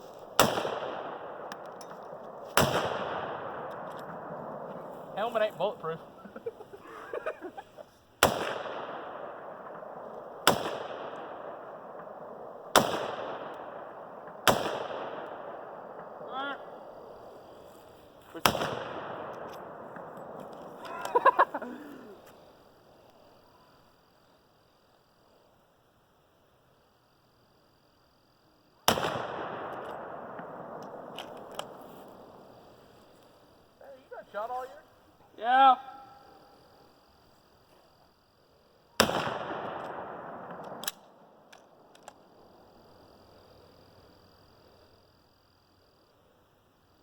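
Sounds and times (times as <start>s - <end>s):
rifle shots with echo: 0.2s - 6.0s, 8.2s - 17.3s, 18.4s - 20.6s, 28.8s - 32.7s, 39.0s - 41.5s.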